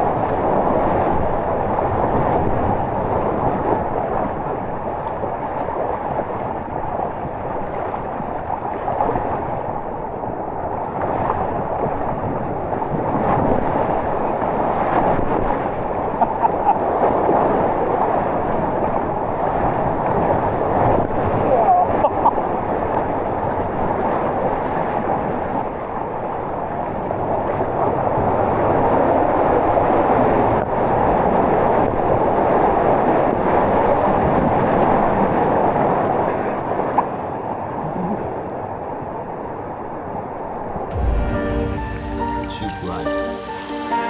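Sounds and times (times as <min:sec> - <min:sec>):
rushing splashing water: 0:40.9 - 0:44.0.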